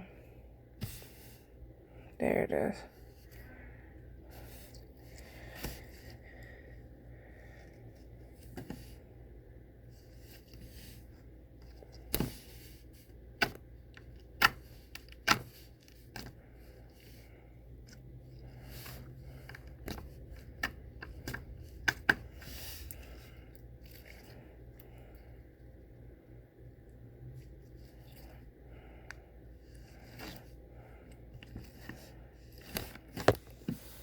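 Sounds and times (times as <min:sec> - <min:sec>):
hands handling slime: 0:31.2 - 0:34.0.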